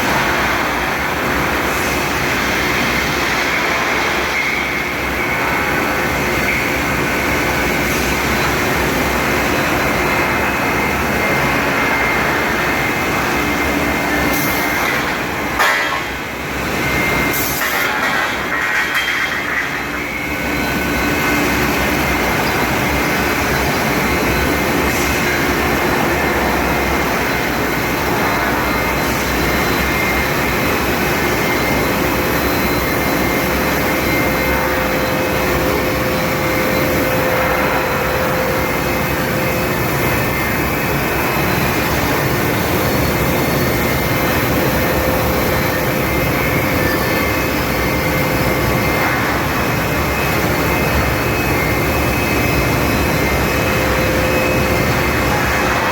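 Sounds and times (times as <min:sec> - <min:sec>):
loud industrial machinery din: 0:00.0 - 0:55.9.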